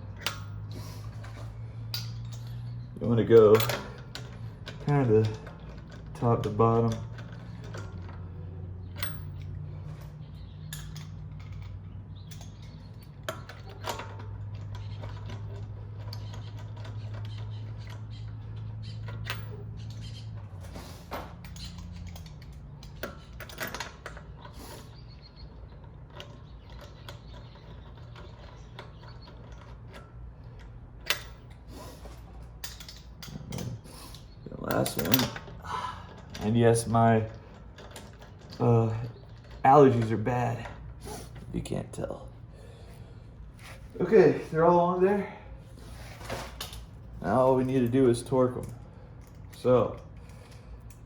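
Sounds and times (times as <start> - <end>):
metallic clicks of bolts and tools: 0.1 - 24.6, 25.4 - 40.9.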